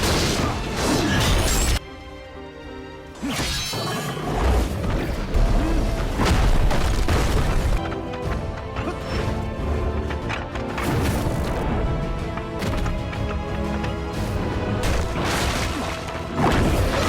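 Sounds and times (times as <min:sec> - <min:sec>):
action film music: 0:00.0 - 0:17.0.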